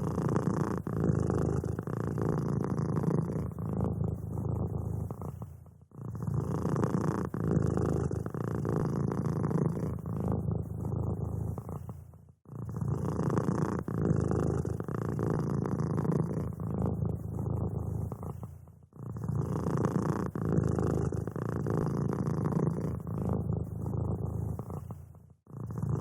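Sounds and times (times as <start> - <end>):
cat purring: 0.0 - 26.0.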